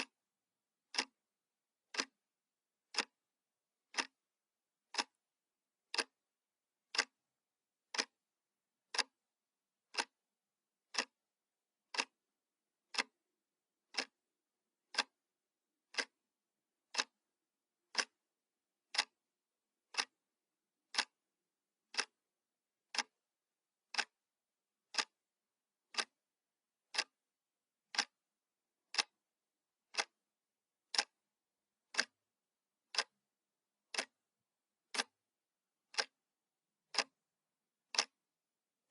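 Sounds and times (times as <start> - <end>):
clock ticking: 0.8 - 1.2, 1.8 - 2.2, 2.8 - 3.2, 3.8 - 4.2, 4.9 - 5.2, 5.8 - 6.2, 6.9 - 7.2, 7.9 - 8.2, 8.9 - 9.2, 9.8 - 10.2, 10.9 - 11.2, 11.9 - 12.2, 12.9 - 13.2, 13.8 - 14.2, 14.8 - 15.2, 15.8 - 16.2, 16.8 - 17.2, 17.8 - 18.2, 18.9 - 19.2, 19.8 - 20.2, 20.9 - 21.2, 21.9 - 22.3, 22.9 - 23.2, 23.9 - 24.2, 24.9 - 25.3, 25.9 - 26.2, 26.9 - 27.2, 27.9 - 28.2, 28.9 - 29.2, 29.9 - 30.2, 30.8 - 31.2, 31.9 - 32.2, 32.9 - 33.2, 33.8 - 34.3, 34.9 - 35.2, 35.9 - 36.2, 36.9 - 37.2, 37.9 - 38.2.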